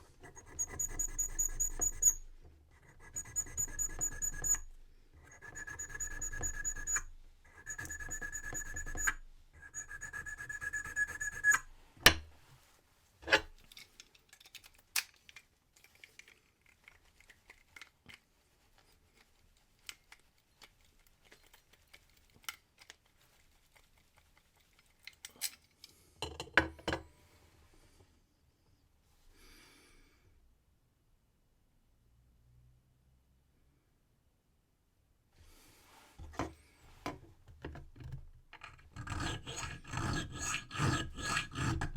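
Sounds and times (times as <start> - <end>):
file rasping on metal: 0.0 - 2.2, 2.8 - 11.7, 38.6 - 41.9.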